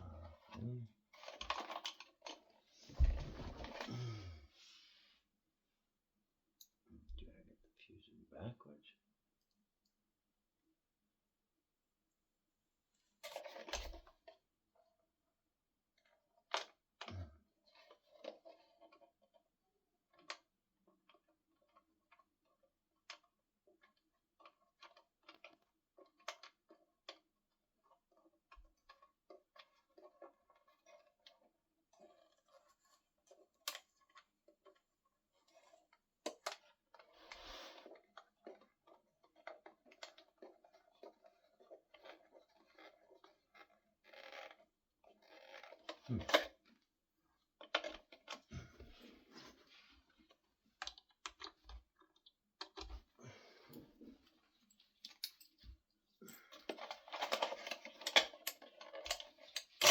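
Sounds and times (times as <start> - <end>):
small parts clicking and tapping: 54.6 - 59.9.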